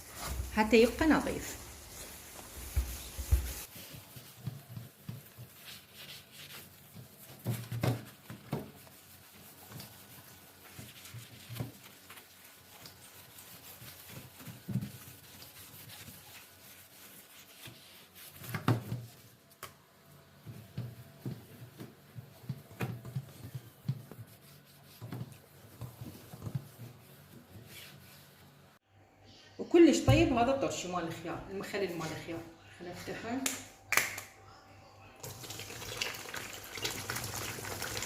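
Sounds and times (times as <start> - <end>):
cloth rubbing on cabinet doors: 0.0 - 28.8.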